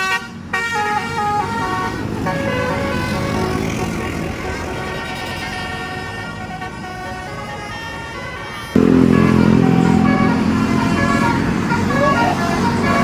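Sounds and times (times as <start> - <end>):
multi-tone bus horn melody: 0.0 - 13.0
low horn chord: 8.7 - 13.0.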